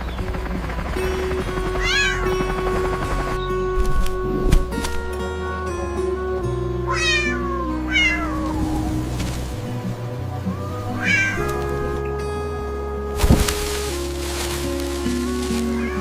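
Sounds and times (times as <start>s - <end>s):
music of held notes: 0.0s - 16.0s
cat meowing: 1.8s - 2.3s, 6.9s - 9.0s, 10.5s - 11.9s.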